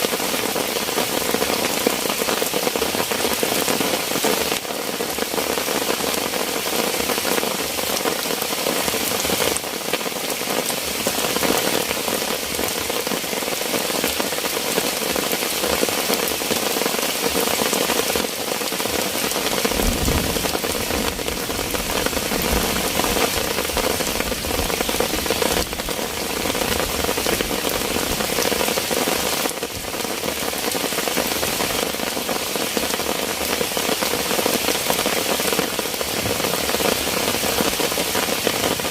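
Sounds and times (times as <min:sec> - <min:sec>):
heavy rain pouring: 0:00.0 - 0:38.9.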